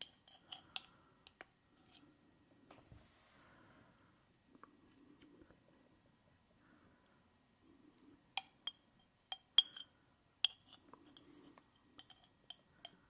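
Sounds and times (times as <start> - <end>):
soft chewing: 4.1 - 8.4, 9.6 - 13.0.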